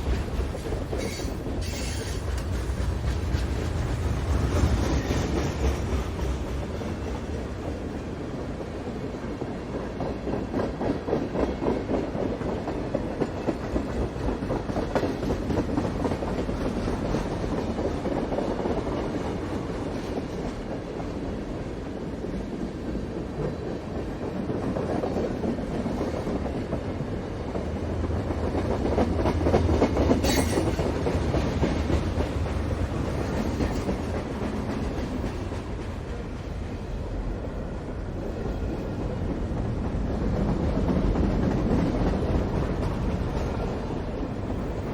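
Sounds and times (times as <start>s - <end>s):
freight train wheels clattering: 0.0s - 8.0s, 23.2s - 36.8s
high-pitched screech: 1.0s - 2.2s.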